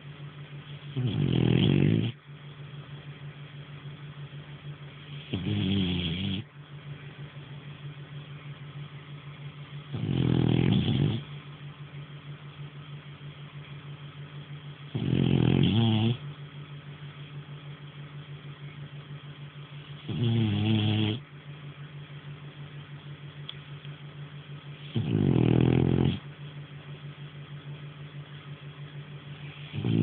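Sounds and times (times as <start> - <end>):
low steady hum: 0.0 - 30.0
dog snoring: 0.8 - 2.2, 5.0 - 6.5, 9.9 - 11.4, 14.9 - 16.2, 19.8 - 21.2, 24.7 - 26.3, 29.3 - 30.0.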